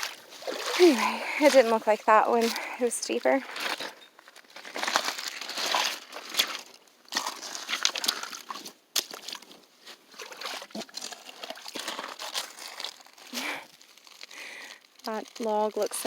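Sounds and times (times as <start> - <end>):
footsteps crunching through brush: 0.0 - 10.8
water sloshing: 0.0 - 13.6.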